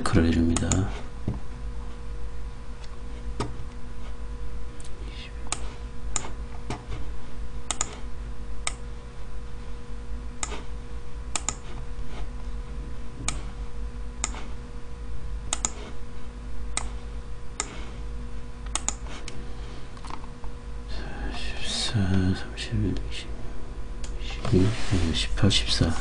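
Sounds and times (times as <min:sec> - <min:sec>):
low electrical hum: 0:00.0 - 0:26.0
computer mouse and keyboard clicking: 0:07.7 - 0:08.0, 0:11.4 - 0:11.7, 0:15.5 - 0:15.8, 0:18.7 - 0:19.0.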